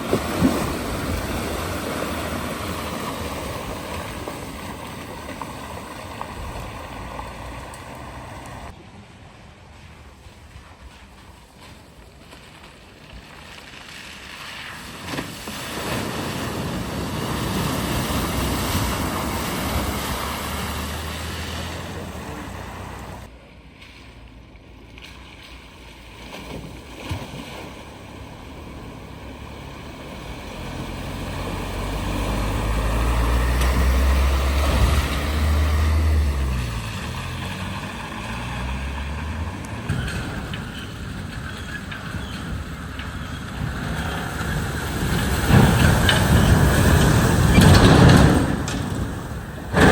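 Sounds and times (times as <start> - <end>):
water rushing and spraying: 0.0 - 8.7, 13.3 - 23.3, 25.4 - 39.9
vehicle engines running: 0.0 - 49.9.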